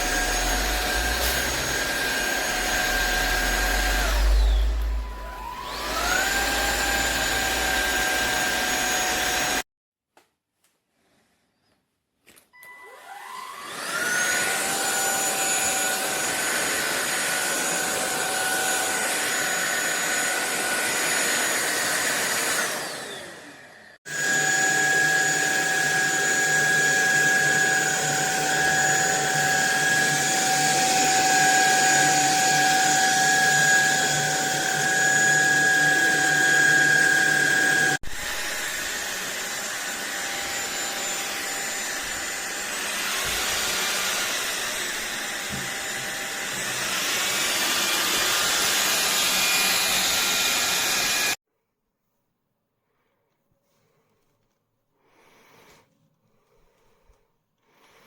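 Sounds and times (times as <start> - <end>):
vacuum motor whining: 0.0 - 9.6, 12.6 - 51.4.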